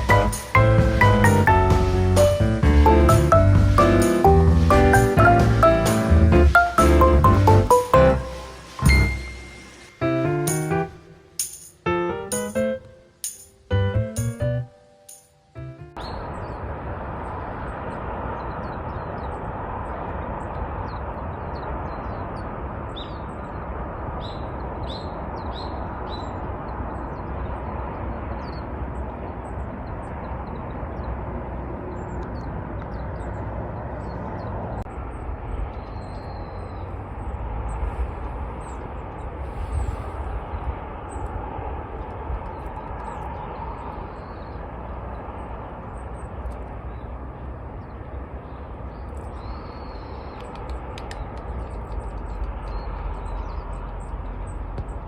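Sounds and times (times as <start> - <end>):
steady low rumble: 0.0 - 14.7, 15.6 - 55.0
small birds chirping: 17.2 - 55.0.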